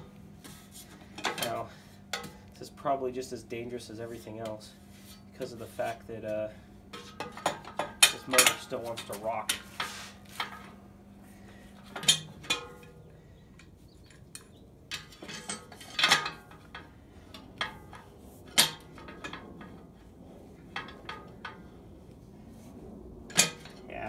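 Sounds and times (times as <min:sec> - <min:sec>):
wrench clanking on metal: 0:06.9 - 0:10.7, 0:11.8 - 0:19.8, 0:23.3 - 0:23.8.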